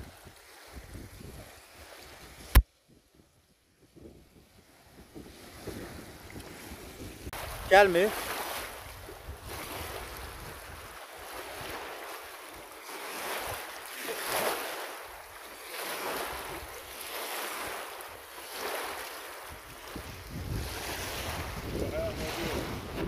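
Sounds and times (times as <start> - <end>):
small waves washing on shore: 0.0 - 3.0, 3.9 - 23.0
wind rumbling on microphone: 0.0 - 12.0, 19.4 - 23.0.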